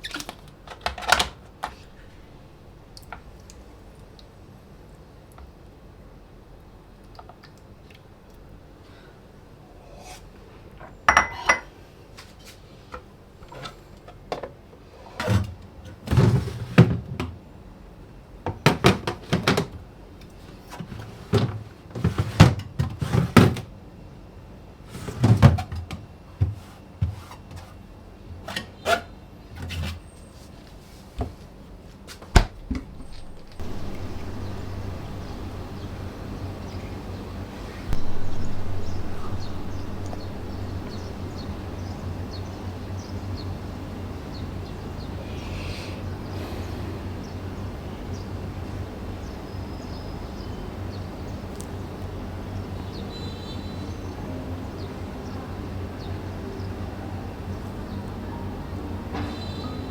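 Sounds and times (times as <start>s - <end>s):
objects knocking and clattering: 32.4s - 36.2s.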